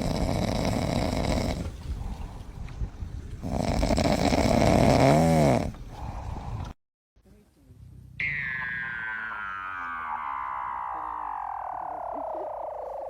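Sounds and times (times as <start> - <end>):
hippopotamus snoring: 0.0 - 1.8, 3.4 - 5.8.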